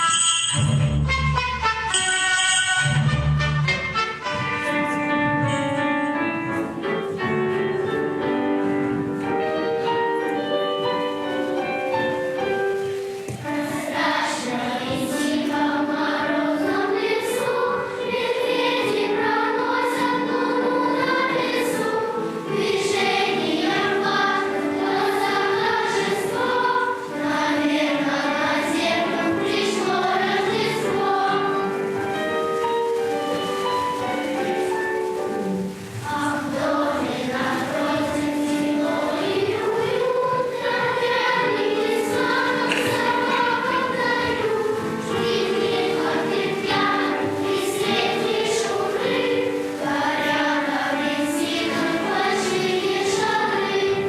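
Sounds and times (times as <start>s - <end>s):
instrumental accompaniment: 0.0s - 54.0s
choir singing: 13.4s - 33.0s, 36.0s - 54.0s.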